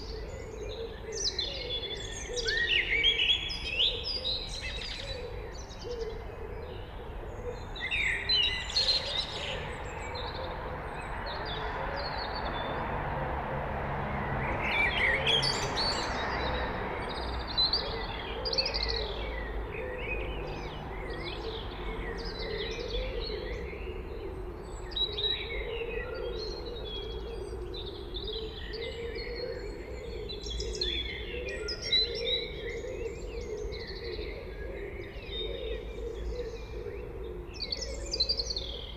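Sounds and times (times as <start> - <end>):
blackbird singing: 0.0 - 6.2, 17.1 - 38.9.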